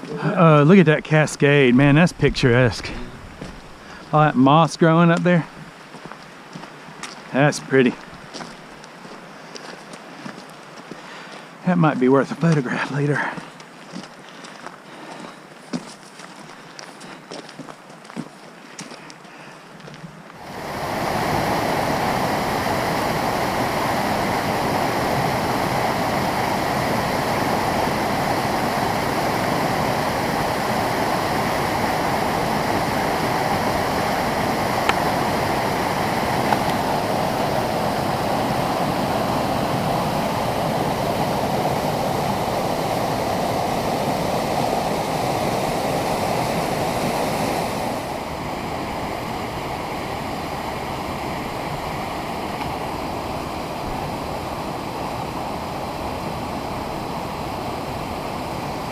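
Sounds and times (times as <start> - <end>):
waterfall rushing: 0.0 - 5.6, 20.4 - 58.9.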